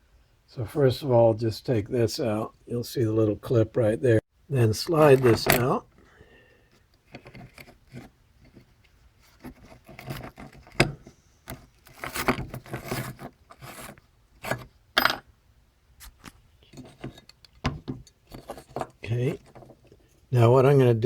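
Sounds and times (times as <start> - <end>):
clicks scrapes and rubbing: 6.7 - 14.8, 16.0 - 20.0.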